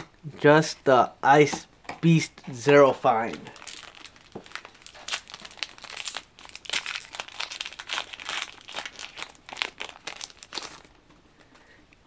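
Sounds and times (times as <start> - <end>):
foil wrapper crinkling: 3.2 - 11.0.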